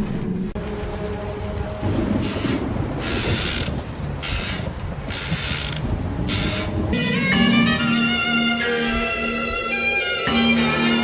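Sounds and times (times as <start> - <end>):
sustained violin notes: 6.5 - 11.0.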